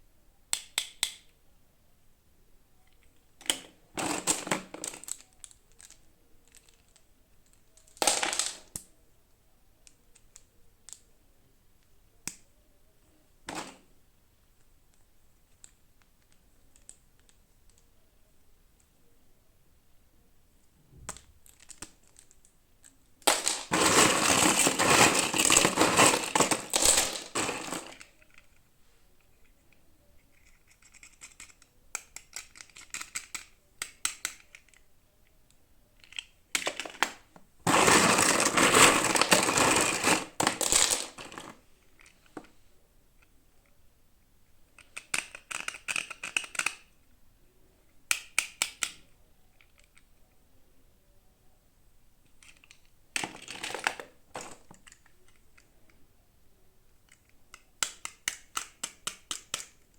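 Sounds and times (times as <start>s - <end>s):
plastic packaging crinkling and tearing: 23.3s - 28.0s, 37.7s - 41.5s.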